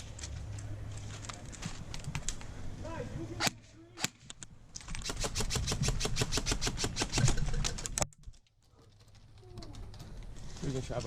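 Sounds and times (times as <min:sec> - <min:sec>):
airsoft rifle firing: 0:04.9 - 0:07.4.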